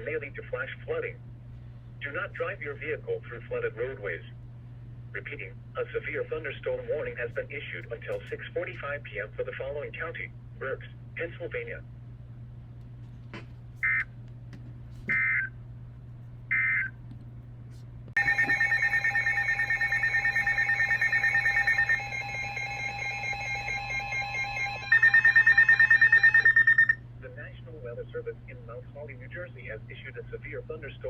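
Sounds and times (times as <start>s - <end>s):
electronic alert tone: 18.2s - 27.0s.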